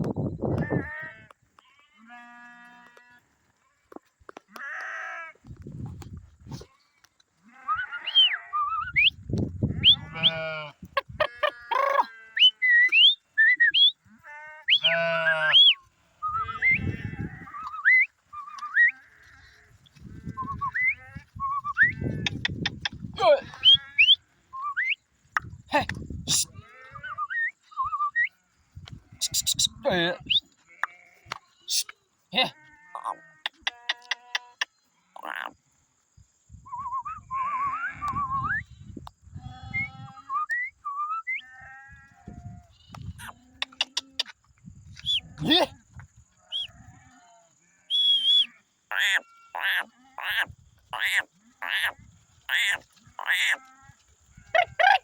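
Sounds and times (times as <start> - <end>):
sheep and lambs bleating: 0.5 - 3.8, 4.5 - 5.4, 6.5 - 8.8, 9.6 - 12.6, 14.0 - 24.5, 25.7 - 27.4, 28.4 - 35.5, 39.3 - 40.4, 41.4 - 44.3, 46.5 - 55.0
lamb bleating: 4.5 - 5.4, 9.7 - 12.4, 14.1 - 15.8, 16.4 - 17.6, 21.8 - 22.6, 23.2 - 24.2, 29.1 - 31.3, 32.4 - 34.6, 48.4 - 55.0.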